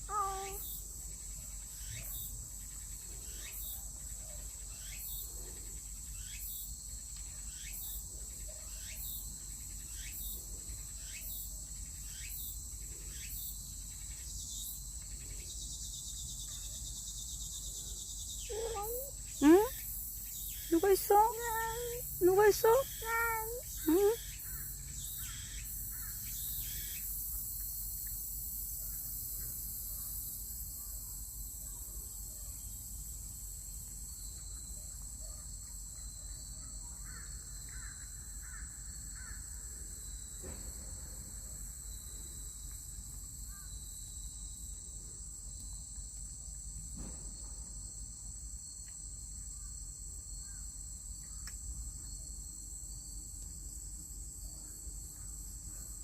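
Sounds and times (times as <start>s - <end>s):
faint bird calls: 0.0s - 0.7s, 18.4s - 19.7s, 20.6s - 24.6s
crickets chirring: 0.0s - 56.0s.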